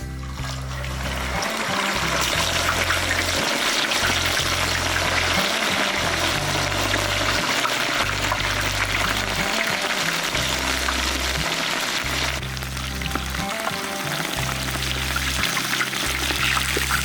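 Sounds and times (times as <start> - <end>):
background music with bass line: 0.0 - 17.0
water running: 0.0 - 17.0.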